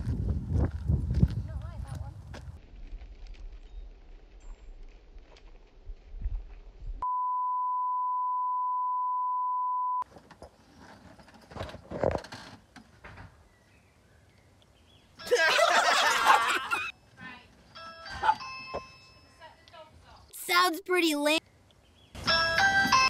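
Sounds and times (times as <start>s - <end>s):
censor bleep tone: 7.0s - 10.0s.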